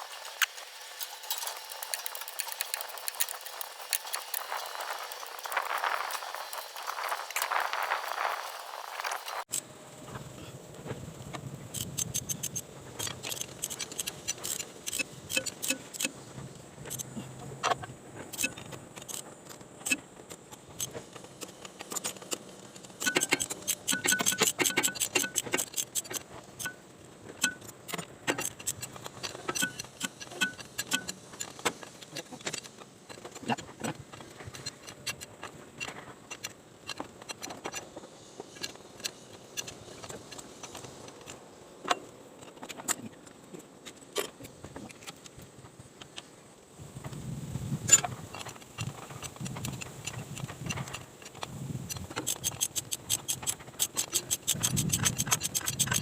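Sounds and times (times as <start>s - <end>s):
metallic clicks of hand tools: 0.1s - 9.6s, 11.7s - 16.2s, 16.9s - 26.8s, 27.4s - 37.9s, 47.9s - 56.0s.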